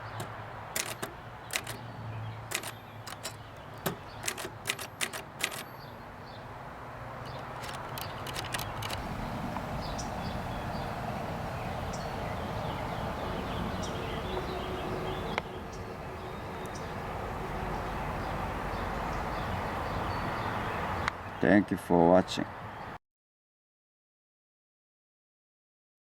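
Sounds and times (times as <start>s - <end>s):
typewriter keystroke clacks: 0.2s - 1.8s, 2.5s - 5.8s, 7.2s - 9.0s
low rumbling noise: 8.9s - 19.4s.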